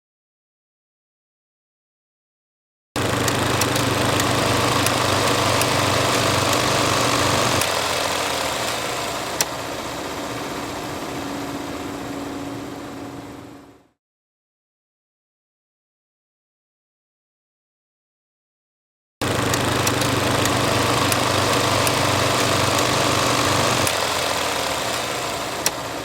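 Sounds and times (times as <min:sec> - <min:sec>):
sharp projector clicks: 0:03.0 - 0:09.7, 0:19.2 - 0:26.0
film projector whirring: 0:03.0 - 0:14.0, 0:19.2 - 0:26.0
low hum: 0:09.6 - 0:14.0.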